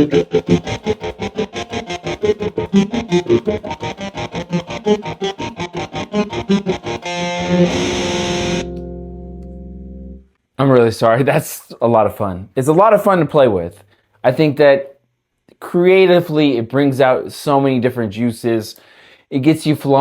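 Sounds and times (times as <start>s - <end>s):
distorted guitar chord ringing: 0.0s - 10.3s
electric guitar picked notes: 0.0s - 10.3s.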